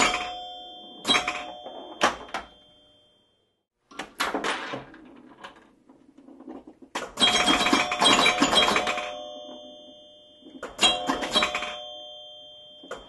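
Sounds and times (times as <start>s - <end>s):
pinball mechanical clacks: 0.0s - 2.6s, 4.0s - 13.0s
pinball bells ringing: 0.0s - 3.4s, 7.1s - 13.0s
rapid pinball clicking: 6.6s - 9.5s, 10.6s - 12.0s.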